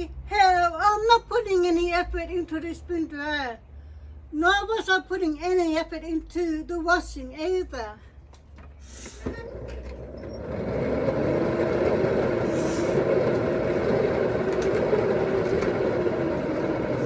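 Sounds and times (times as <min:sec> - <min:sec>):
spin dryer whirring: 0:09.3 - 0:17.0.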